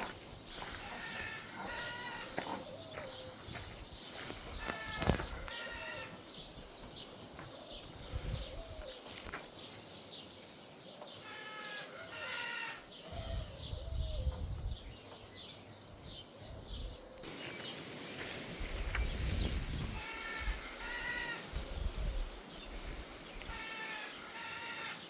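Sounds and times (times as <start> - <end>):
small birds chirping: 0.0 - 25.0
bleat-like bird call: 0.8 - 2.5, 4.6 - 6.2, 11.2 - 12.9, 19.9 - 21.7, 23.4 - 25.0.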